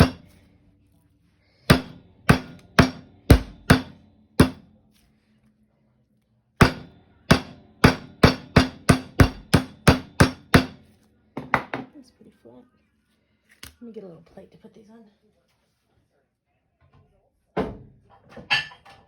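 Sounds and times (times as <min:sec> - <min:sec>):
meat pounding thuds: 0:00.0 - 0:00.4, 0:01.7 - 0:04.6, 0:06.6 - 0:10.8.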